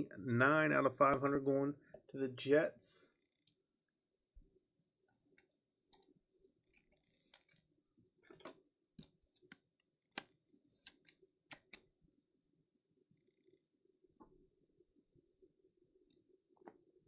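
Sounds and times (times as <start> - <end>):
trading cards being shuffled: 7.0 - 7.6, 10.2 - 11.8.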